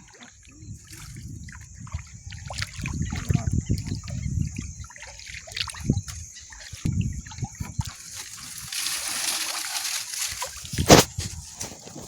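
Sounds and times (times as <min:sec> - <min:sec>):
shallow water splashing: 0:00.0 - 0:12.0
trickling water hiss: 0:00.0 - 0:12.0.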